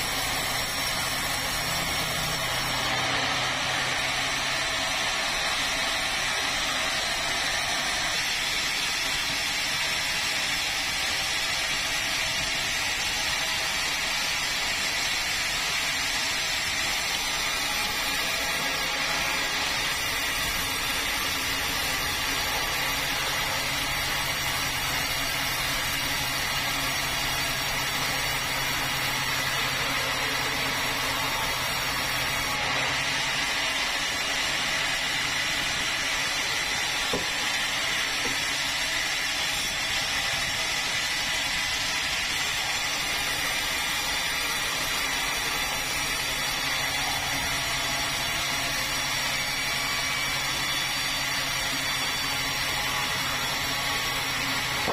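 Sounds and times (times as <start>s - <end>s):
motor saw cutting log: 0.0s - 54.9s.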